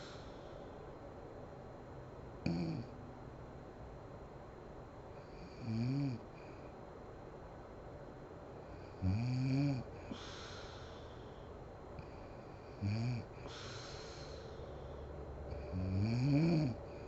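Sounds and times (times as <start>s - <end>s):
hissing rush of breath: 0.0s - 0.8s, 10.0s - 12.5s, 13.4s - 15.2s
woman snoring heavily: 2.5s - 2.9s, 5.4s - 6.2s, 8.8s - 10.8s, 12.0s - 14.2s, 15.5s - 17.0s.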